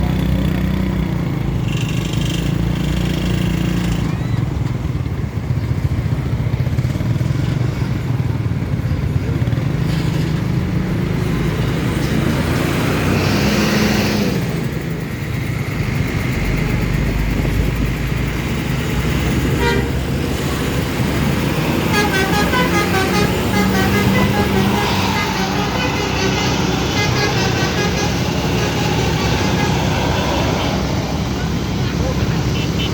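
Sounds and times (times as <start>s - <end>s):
road traffic engines: 0.0s - 32.9s
bus horn playing a tune: 19.4s - 20.2s, 21.6s - 31.0s.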